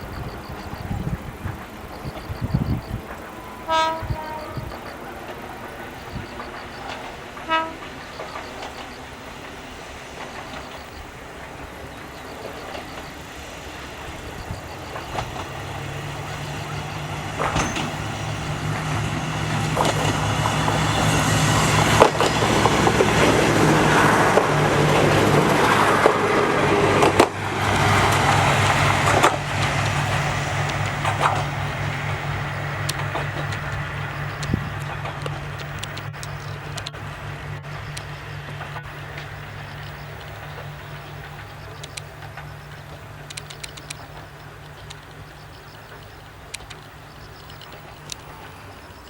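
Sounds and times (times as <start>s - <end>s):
diesel engine drone: 0.0s - 49.0s
wheels clacking over rail joints: 0.0s - 49.0s
train horn toot: 3.4s - 5.0s, 7.4s - 8.3s, 38.5s - 39.5s.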